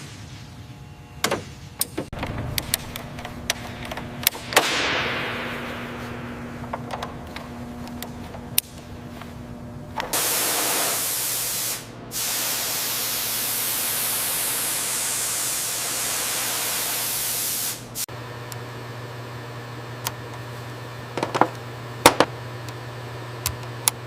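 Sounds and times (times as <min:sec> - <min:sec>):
low shop hum: 0:00.0 - 0:24.0
loud spray hiss: 0:10.1 - 0:18.1.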